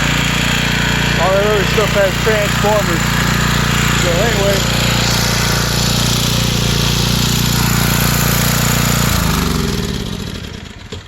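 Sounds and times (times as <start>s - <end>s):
generator engine running: 0.0s - 11.0s.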